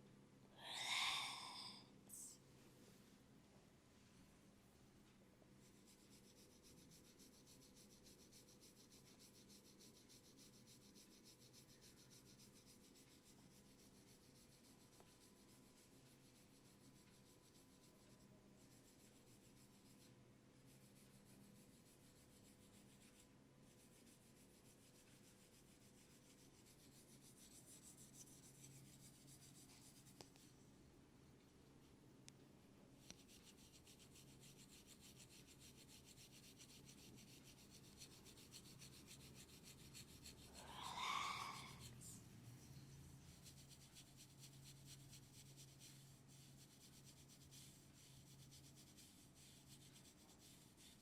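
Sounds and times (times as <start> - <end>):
hands rubbing oiled skin: 33.0 - 42.0.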